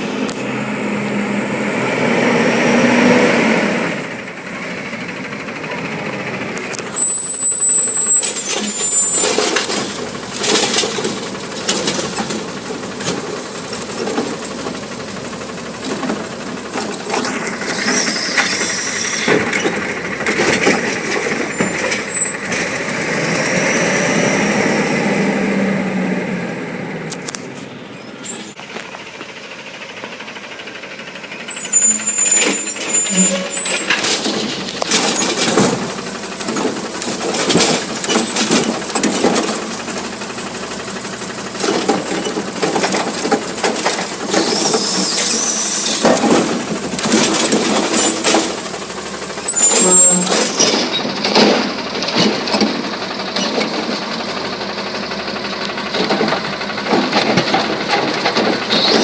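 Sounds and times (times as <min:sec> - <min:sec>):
garbage truck engine revving: 0:00.0 - 0:27.4, 0:31.2 - 0:59.0
knocks and clattering: 0:09.2 - 0:15.0, 0:19.2 - 0:22.0, 0:33.8 - 0:40.1, 0:41.5 - 0:45.3, 0:45.9 - 0:48.8, 0:50.1 - 0:54.2, 0:55.8 - 0:59.0
air brake hiss: 0:17.7 - 0:19.3, 0:44.4 - 0:46.0.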